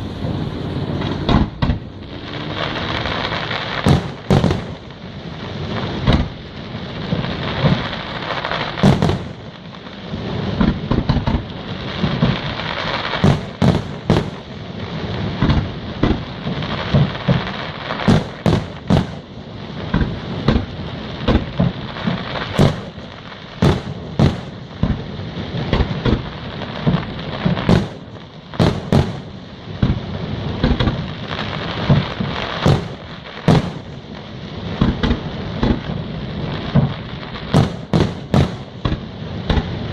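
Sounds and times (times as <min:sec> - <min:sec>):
crackling hiss: 0:00.0 - 0:39.9
firework shell bursts: 0:08.8 - 0:09.4, 0:31.9 - 0:33.9.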